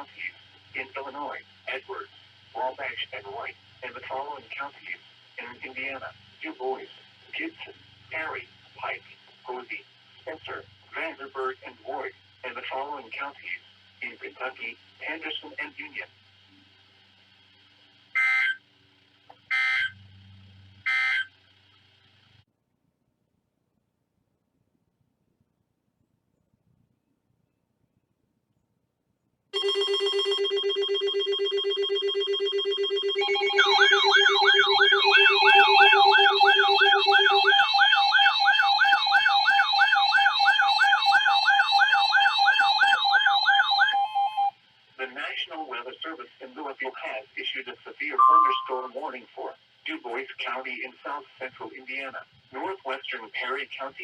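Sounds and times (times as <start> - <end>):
raspy two-tone data squawk: 18.1 - 18.6, 19.5 - 20.0, 20.8 - 21.3, 48.2 - 49.0
weather alert radio siren yelp: 18.2 - 18.6, 19.5 - 20.0, 20.8 - 21.3, 29.6 - 44.5, 48.2 - 49.0
low hum: 30.4 - 40.6
low steady tone: 48.2 - 49.0.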